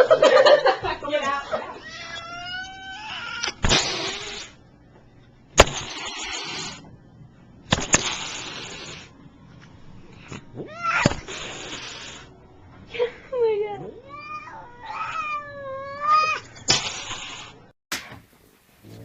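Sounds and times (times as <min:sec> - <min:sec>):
cat hissing: 0:01.8 - 0:04.6, 0:05.6 - 0:06.9, 0:07.7 - 0:09.1, 0:10.2 - 0:12.3, 0:14.2 - 0:17.7.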